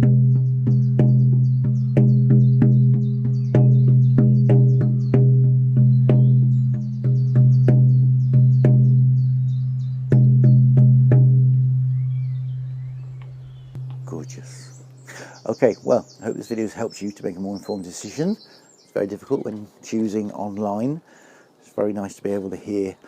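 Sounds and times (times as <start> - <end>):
frame drum beating: 0.0 - 12.6, 13.7 - 15.1.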